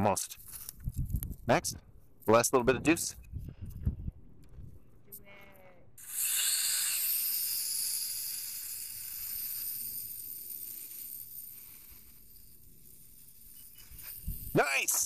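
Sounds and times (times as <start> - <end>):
toy quadcopter motors whining: 6.0 - 15.0.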